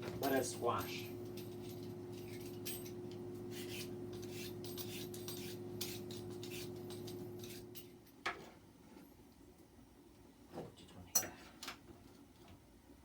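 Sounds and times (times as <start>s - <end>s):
blade scraping squash skin: 3.5s - 7.7s.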